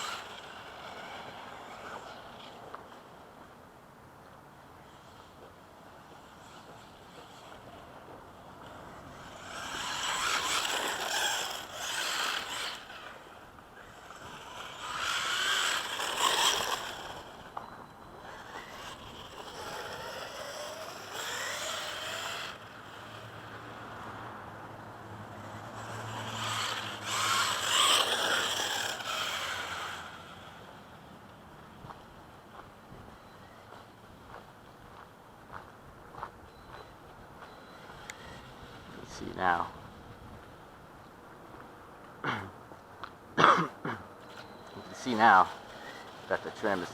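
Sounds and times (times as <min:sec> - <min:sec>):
tyres rushing on dirt: 0:00.0 - 0:03.3, 0:04.9 - 0:35.8, 0:43.7 - 0:46.9
rc car motor and gear whine: 0:00.0 - 0:03.6, 0:04.2 - 0:43.2, 0:44.2 - 0:46.9.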